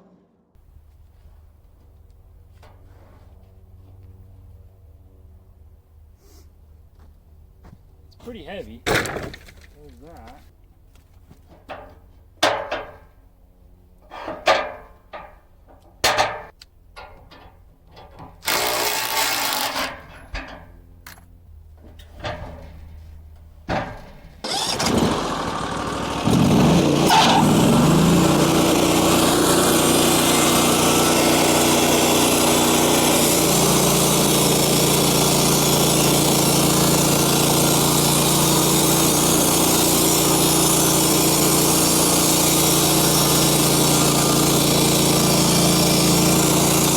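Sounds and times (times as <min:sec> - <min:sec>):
sawmill engine running: 0:18.4 - 0:19.8, 0:24.4 - 0:46.9.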